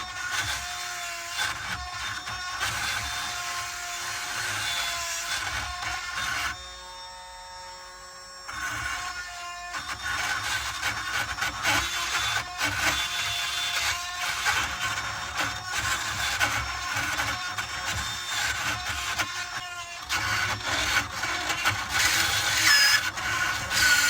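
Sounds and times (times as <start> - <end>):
power drill grinding metal: 0.0 - 24.0.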